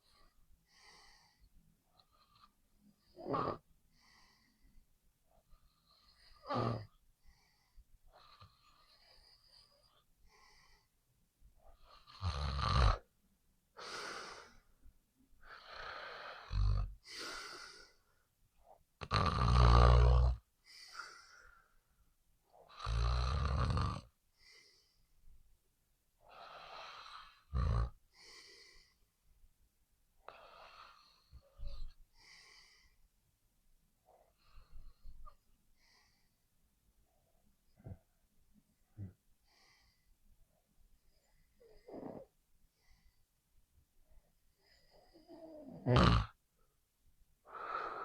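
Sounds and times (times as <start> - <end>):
soft breathy breaths: 0.0 - 12.2, 13.7 - 19.0, 20.3 - 23.1, 24.2 - 25.5, 26.2 - 29.4, 30.2 - 33.3, 33.9 - 46.8, 47.4 - 48.0
loud low snoring: 12.2 - 13.0, 19.0 - 20.4, 22.7 - 24.1, 27.0 - 27.9, 45.1 - 46.4.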